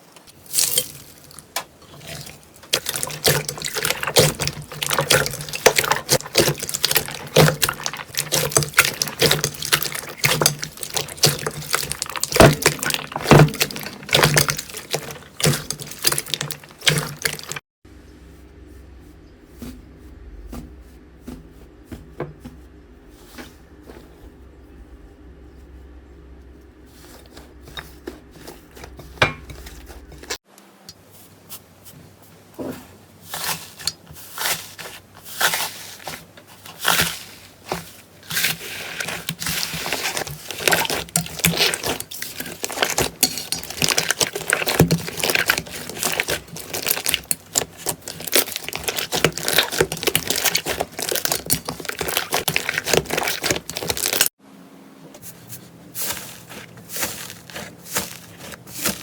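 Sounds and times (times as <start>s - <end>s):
slime crackling and popping: 0.5s - 17.6s, 38.4s - 54.3s.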